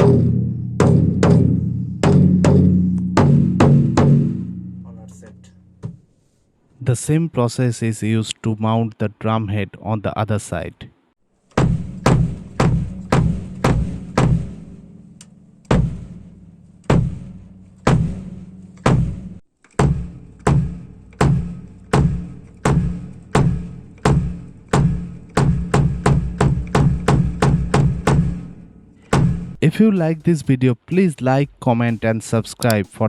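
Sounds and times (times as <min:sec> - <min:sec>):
bass drum hits: 0:00.0 - 0:05.0, 0:11.6 - 0:30.2.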